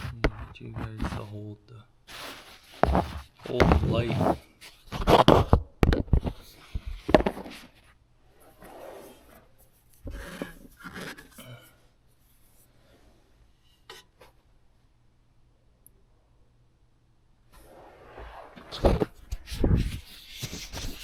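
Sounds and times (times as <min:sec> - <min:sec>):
scraping: 0:02.1 - 0:05.4, 0:17.6 - 0:21.0
handling knocks and rustles: 0:02.1 - 0:07.9.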